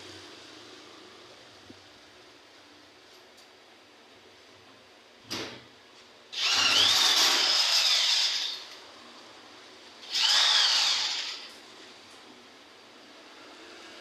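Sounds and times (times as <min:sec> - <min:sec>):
electric power tool whining: 0:06.4 - 0:08.8, 0:10.0 - 0:11.6.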